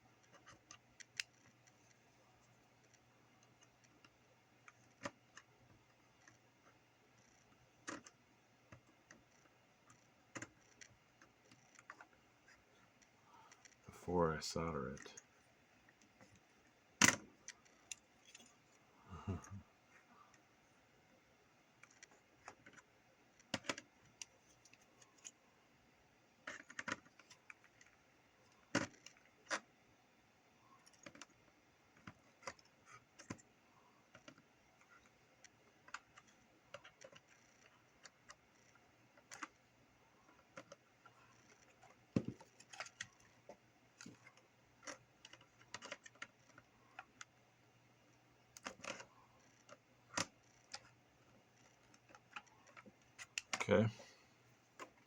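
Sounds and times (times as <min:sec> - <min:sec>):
faint low hum: 0:00.0 - 0:55.0.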